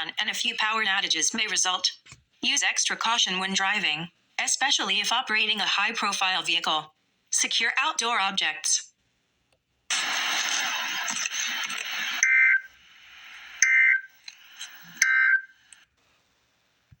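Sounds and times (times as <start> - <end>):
screeching data bursts: 9.9 - 12.8, 13.5 - 15.5
static hiss: 9.9 - 16.8.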